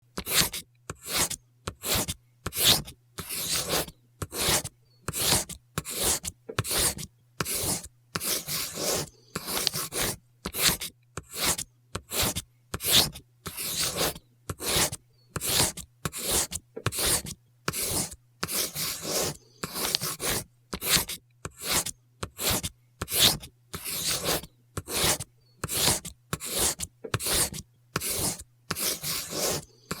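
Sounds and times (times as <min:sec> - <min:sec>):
pencil scratching on paper: 0:00.2 - 0:30.0.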